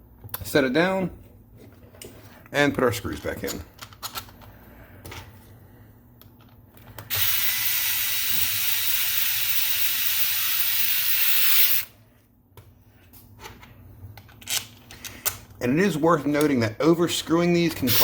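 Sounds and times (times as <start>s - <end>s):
power driver driving screw: 7.1s - 11.9s.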